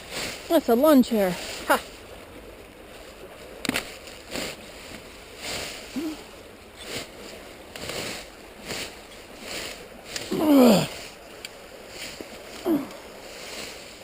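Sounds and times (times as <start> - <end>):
footsteps on frozen ground and leaves: 3.4 - 14.0.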